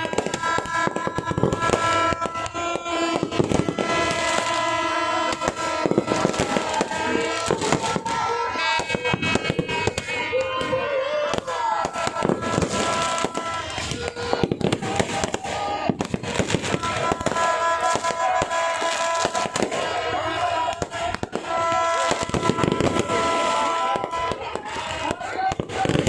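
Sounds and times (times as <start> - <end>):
fireworks bangs and crackles: 0.0 - 26.0.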